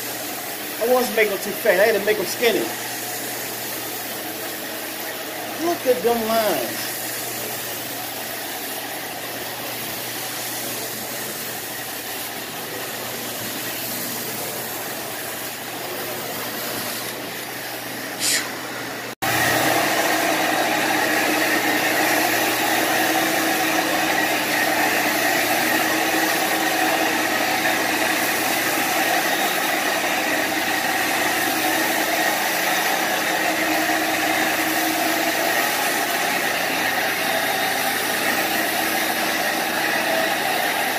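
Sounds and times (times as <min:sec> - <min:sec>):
carpet cleaner motor running: 0:00.0 - 0:40.9.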